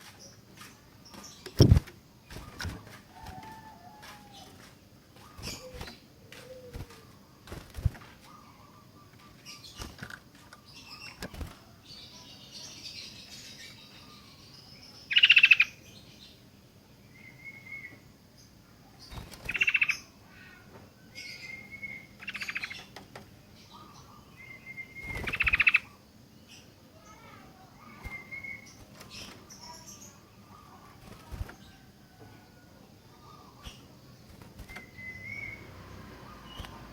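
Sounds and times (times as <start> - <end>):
bird whistled notes: 34.7 - 35.8.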